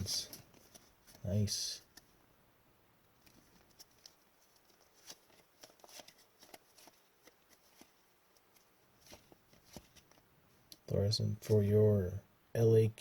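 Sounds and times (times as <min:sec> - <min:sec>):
trading cards being handled: 0:00.0 - 0:02.2, 0:03.1 - 0:10.9.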